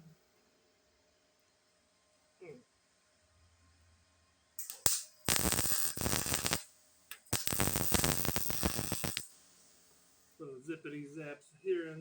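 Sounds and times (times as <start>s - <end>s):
electric welding crackle: 4.6s - 10.3s.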